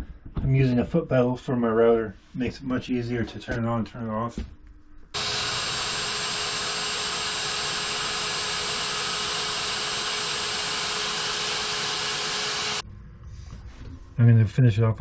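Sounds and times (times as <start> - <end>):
router carving wood: 5.2 - 12.8.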